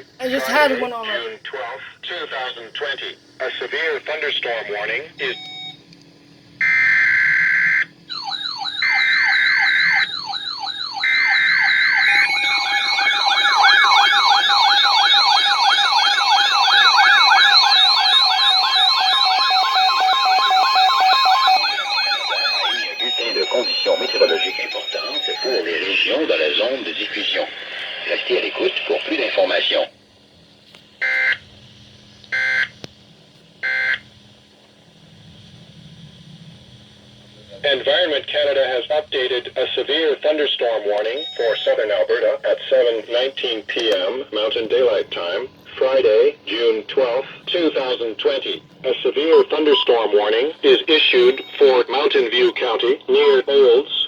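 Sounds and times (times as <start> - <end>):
steady low hum: 0.0 - 6.8, 22.0 - 54.0
steady high tone: 0.2 - 1.2, 12.1 - 13.7, 21.8 - 27.0
steady lower tone: 34.1 - 39.7.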